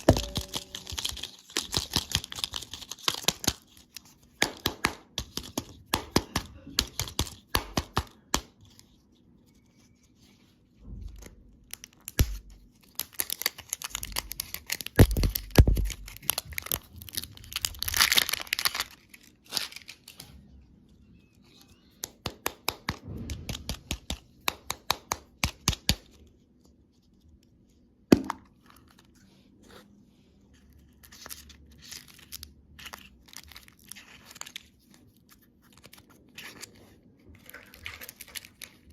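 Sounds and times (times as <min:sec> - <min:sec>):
candy wrapper crinkling: 0:00.0 - 0:04.6, 0:11.6 - 0:22.7, 0:30.5 - 0:38.9.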